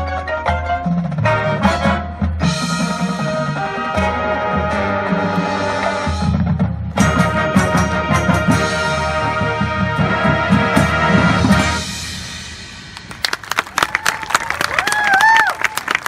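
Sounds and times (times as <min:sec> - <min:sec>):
marching band playing: 0:00.0 - 0:16.0
low drums: 0:00.5 - 0:13.7
brass sustained chords: 0:01.2 - 0:06.4, 0:07.0 - 0:12.6.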